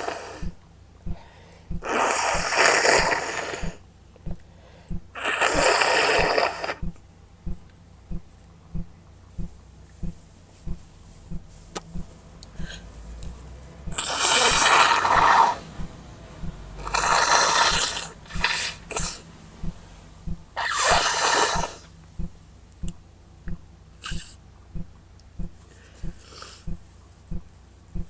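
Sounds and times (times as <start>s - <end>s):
person blowing nose: 1.8s - 3.8s, 5.2s - 6.9s, 14.0s - 15.7s, 16.8s - 19.2s, 20.6s - 21.9s, 24.0s - 24.4s.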